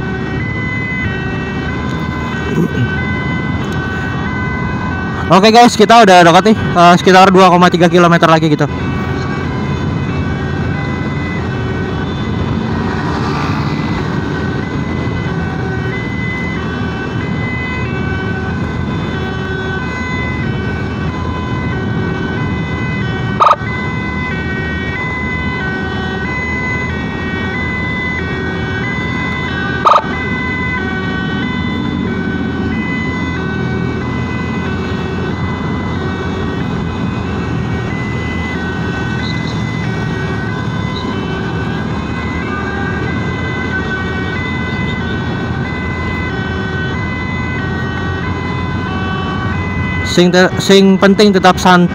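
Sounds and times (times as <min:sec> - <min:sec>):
traffic rumble: 0:00.0 - 0:51.9
two-tone emergency siren: 0:00.0 - 0:51.9
wind: 0:00.0 - 0:51.9.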